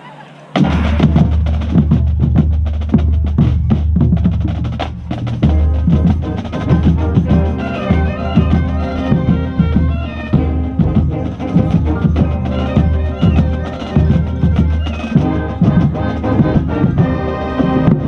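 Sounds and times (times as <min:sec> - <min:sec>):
drumline bass drums and snares: 0:00.0 - 0:18.0
held melody notes: 0:05.0 - 0:18.0
low wind instrument chords: 0:05.1 - 0:18.0.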